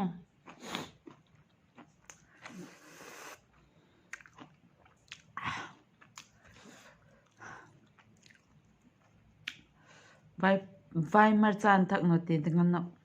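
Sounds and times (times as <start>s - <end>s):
person chewing and crunching: 0.2s - 9.7s.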